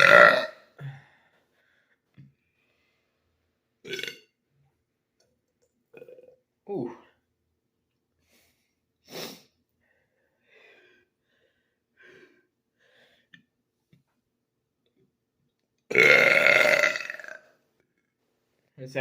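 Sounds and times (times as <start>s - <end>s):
man burping loudly: 0.0s - 0.9s, 3.8s - 4.3s, 5.9s - 6.8s, 15.9s - 17.5s.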